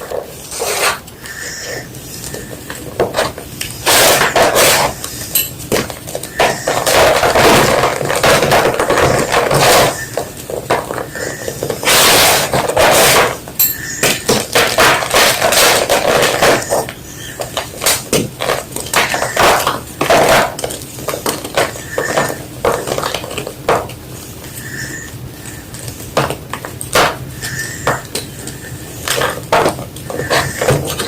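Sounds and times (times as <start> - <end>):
chalk block crunching: 0.0 - 13.4.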